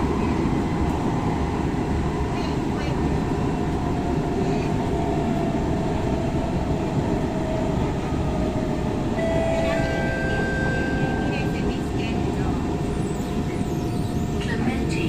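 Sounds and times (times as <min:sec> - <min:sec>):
steady higher tones: 0:09.2 - 0:13.4
faint whine: 0:09.2 - 0:13.9.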